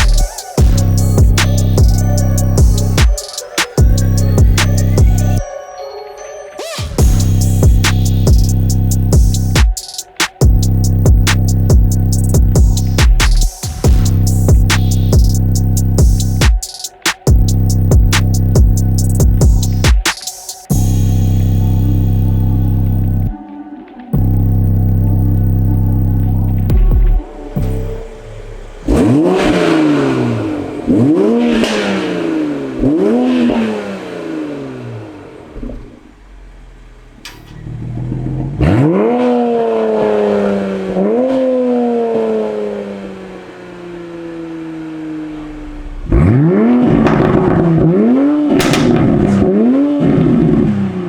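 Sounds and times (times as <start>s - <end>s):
car engine revving: 0.0s - 5.4s, 7.0s - 9.8s, 10.4s - 23.4s, 24.2s - 51.0s.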